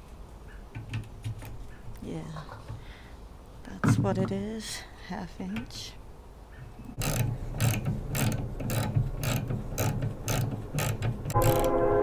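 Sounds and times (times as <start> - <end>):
socket ratchet clicking: 6.9 - 11.8
steady humming tone: 6.9 - 12.0.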